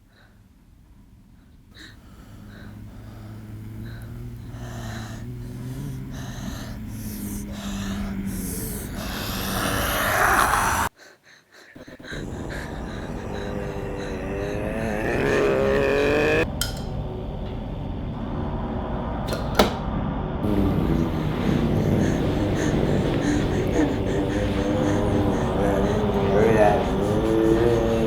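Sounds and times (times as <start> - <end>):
low steady hum: 1.0 - 9.5, 12.0 - 28.0
person breathing heavily and gasping: 1.7 - 16.5, 20.4 - 28.0.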